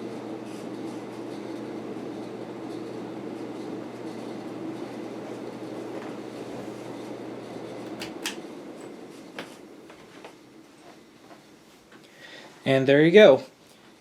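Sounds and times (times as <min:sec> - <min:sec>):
ceiling fan air rushing: 0:00.0 - 0:14.0
sharp clicks: 0:07.9 - 0:08.4.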